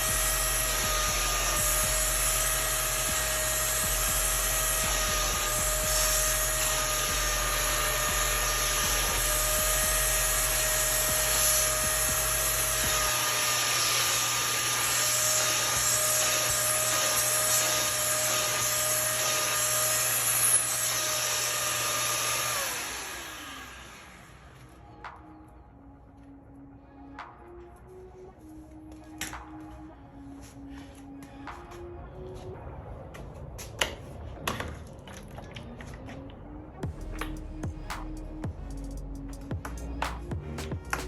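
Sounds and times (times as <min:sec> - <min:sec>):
vacuum motor spinning down: 0:00.0 - 0:24.6
vacuum cleaner whining: 0:00.0 - 0:24.8.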